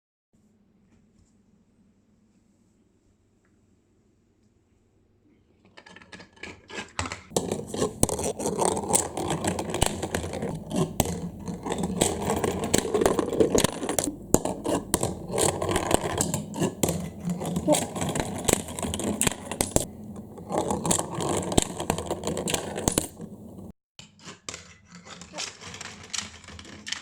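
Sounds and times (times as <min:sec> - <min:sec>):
plastic marble-run balls clattering: 0:05.7 - 0:23.7, 0:25.0 - 0:27.0.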